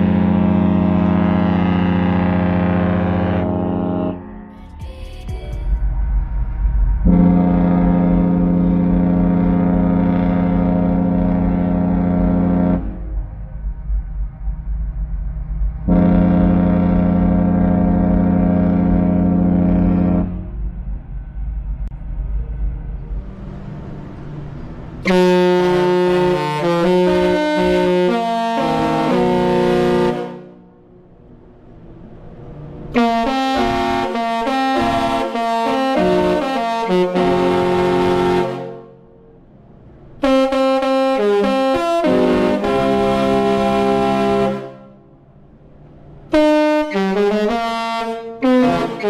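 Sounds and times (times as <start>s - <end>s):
ship horn blast: 0.0s - 4.8s, 7.0s - 14.0s, 15.8s - 20.9s, 24.6s - 31.5s, 32.8s - 39.5s, 40.2s - 45.5s, 46.3s - 49.0s
low rumble: 0.0s - 34.2s, 38.8s - 40.3s, 42.4s - 46.4s.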